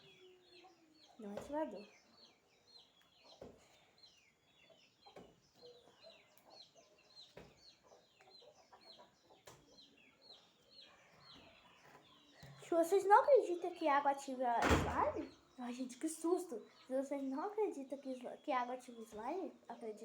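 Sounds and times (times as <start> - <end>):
bird chirping: 0.0 - 20.0.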